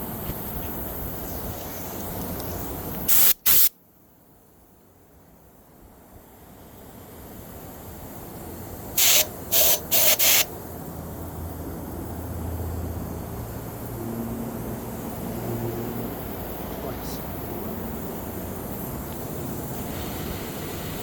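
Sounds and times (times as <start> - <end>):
compressed air blasts: 3.0 - 3.8, 8.9 - 10.6, 19.6 - 21.0.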